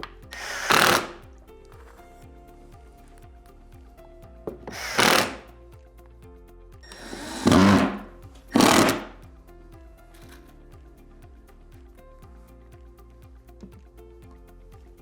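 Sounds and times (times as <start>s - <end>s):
background music: 0.0s - 15.0s
impact drill driving screws into metal: 0.4s - 1.2s, 4.7s - 5.5s, 6.9s - 9.2s.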